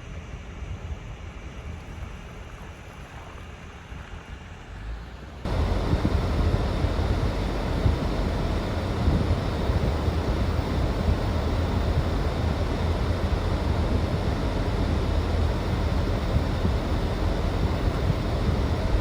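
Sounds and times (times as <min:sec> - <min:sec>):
road traffic rumble: 0:05.5 - 0:19.0.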